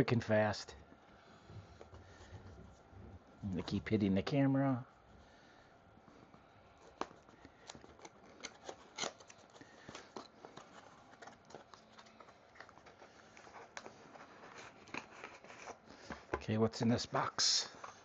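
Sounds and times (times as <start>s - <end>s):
packaging rustling and scraping: 6.1s - 16.4s, 17.2s - 18.0s.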